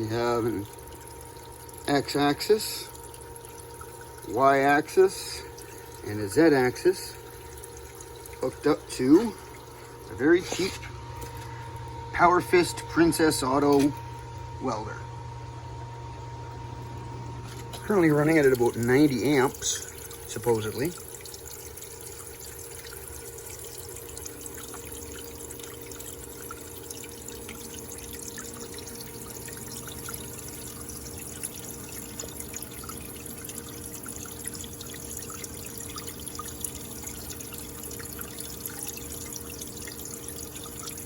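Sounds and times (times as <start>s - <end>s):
electrical hum: 0.0s - 41.0s.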